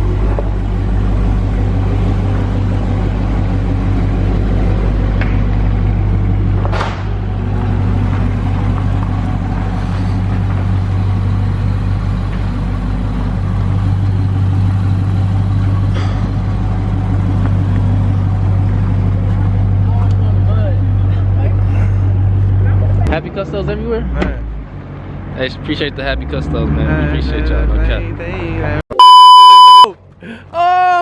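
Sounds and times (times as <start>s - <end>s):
car engine idling: 0.0s - 22.9s.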